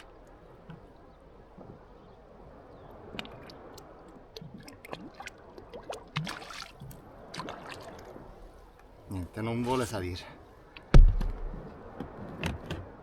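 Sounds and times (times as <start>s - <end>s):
water splashing and dripping: 3.1s - 8.3s, 10.9s - 11.7s.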